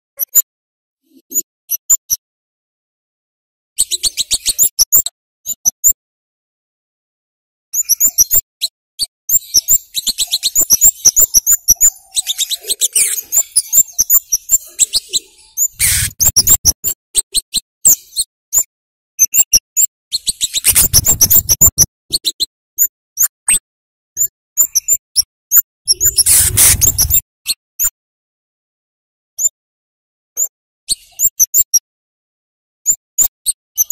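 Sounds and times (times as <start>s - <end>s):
bird sharp high chips: 9.4s - 16.8s, 25.9s - 27.2s
noisy bursts: 26.0s - 27.2s.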